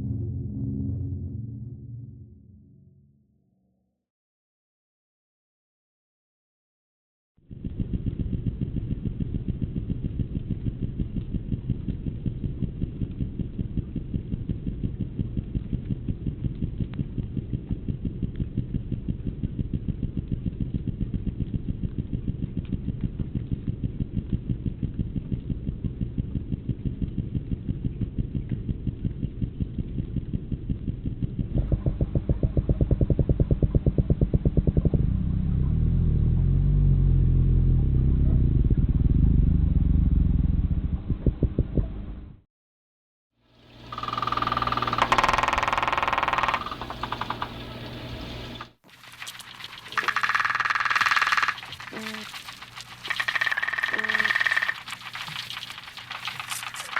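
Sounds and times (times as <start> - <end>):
underwater fish call pulsing: 43.8 - 48.7, 49.6 - 56.9.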